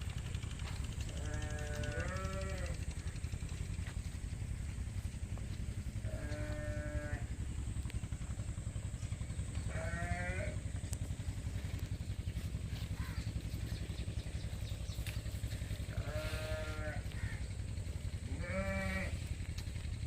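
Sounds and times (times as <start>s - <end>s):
steady low rumble: 0.0s - 20.0s
livestock bleating: 1.1s - 2.8s, 6.0s - 7.3s, 9.7s - 10.6s, 15.9s - 17.4s, 18.2s - 19.3s.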